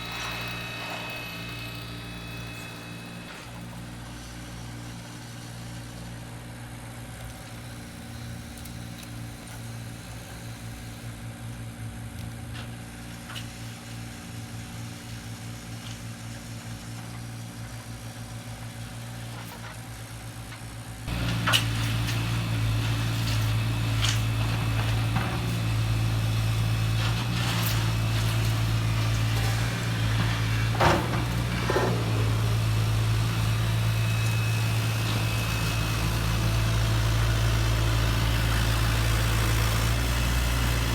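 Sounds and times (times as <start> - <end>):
toy machines engine-like hum: 0.0 - 6.2.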